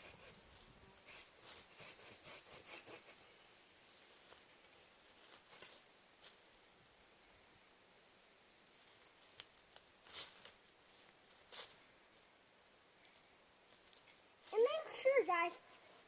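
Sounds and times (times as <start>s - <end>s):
hand saw cutting wood: 1.0s - 3.2s.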